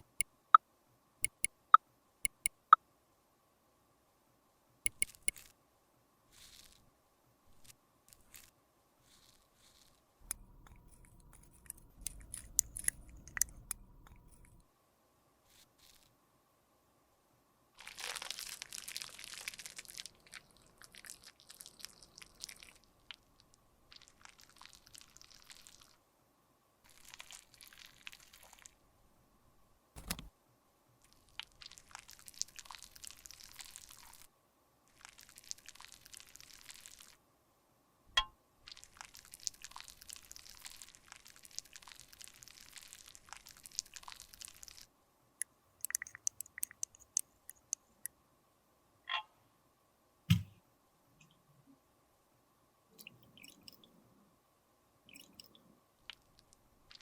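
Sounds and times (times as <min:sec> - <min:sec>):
sharp click: 0:01.2 - 0:01.5, 0:02.3 - 0:02.7, 0:04.9 - 0:05.4, 0:30.0 - 0:30.3, 0:50.3 - 0:50.5
tool crushing and scraping makeup: 0:11.0 - 0:13.8
knock: 0:50.3 - 0:50.5.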